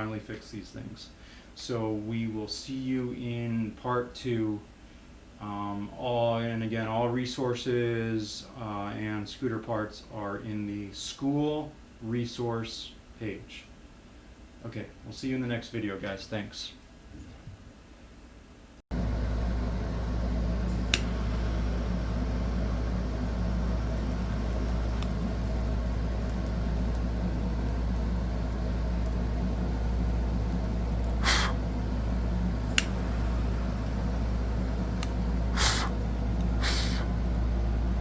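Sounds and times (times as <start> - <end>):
low mechanical hum: 0.0 - 38.0
short hissing bursts: 31.1 - 31.6, 35.5 - 36.0, 36.6 - 37.1.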